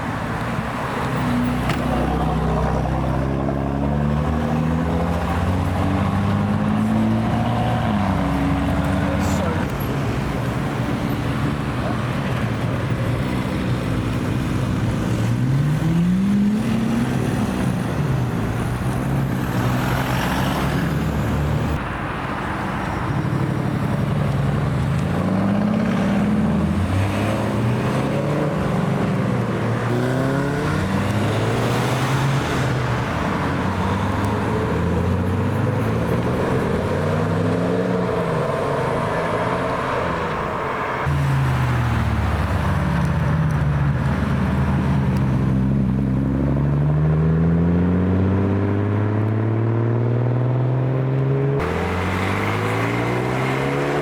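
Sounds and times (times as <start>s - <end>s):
car engines accelerating past: 25.0s - 54.0s.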